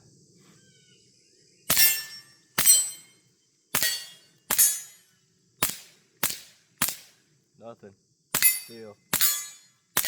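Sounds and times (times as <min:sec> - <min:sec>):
suppressed pistol shots: 0:03.8 - 0:04.9, 0:05.6 - 0:07.1, 0:08.4 - 0:10.0.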